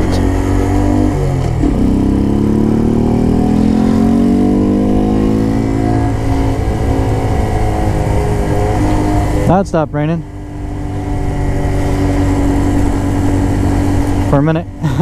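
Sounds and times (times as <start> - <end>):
motorcycle engine accelerating: 0.0 - 15.0
constant low rumble: 4.8 - 15.0.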